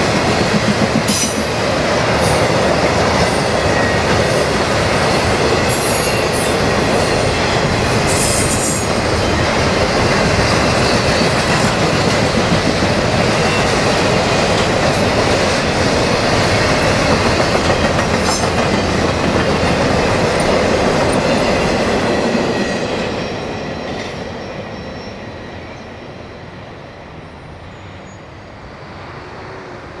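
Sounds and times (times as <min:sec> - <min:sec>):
freight train cars rumbling past: 0:00.0 - 0:30.0
clacking over rail joints: 0:16.9 - 0:21.3.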